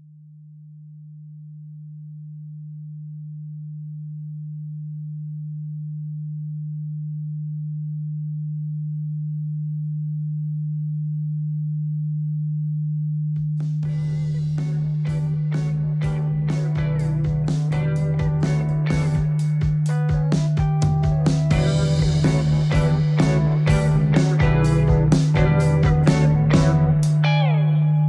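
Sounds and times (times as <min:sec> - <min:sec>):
low electronic sine tone: 0:00.0 - 0:28.0
music with guitar: 0:13.9 - 0:28.0.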